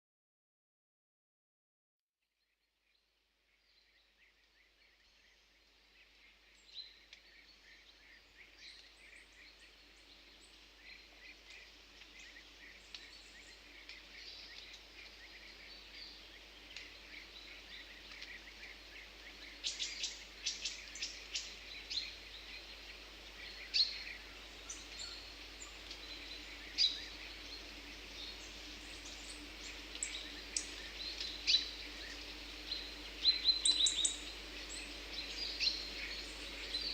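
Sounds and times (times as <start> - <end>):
faint steady hiss: 2.8 - 36.9
songbirds chirping: 2.8 - 36.9.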